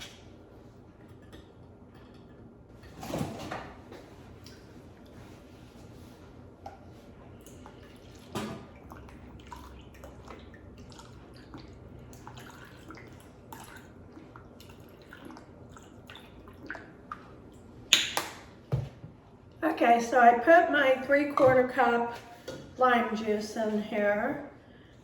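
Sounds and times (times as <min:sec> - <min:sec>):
liquid pouring and dripping: 0:07.4 - 0:18.1.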